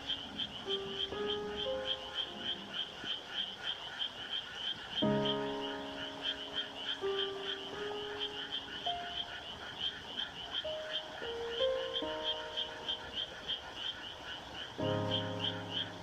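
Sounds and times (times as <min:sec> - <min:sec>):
soft piano notes: 0:00.0 - 0:04.0, 0:04.6 - 0:16.0
chorus of frogs croaking: 0:00.0 - 0:16.0.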